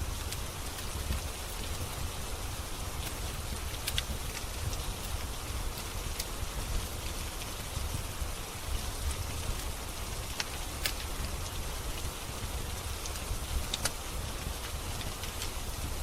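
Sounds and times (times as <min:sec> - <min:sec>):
steady rain falling: 0:00.0 - 0:16.0
wood fire crackling pops: 0:03.0 - 0:07.9, 0:08.6 - 0:12.1, 0:12.7 - 0:15.9.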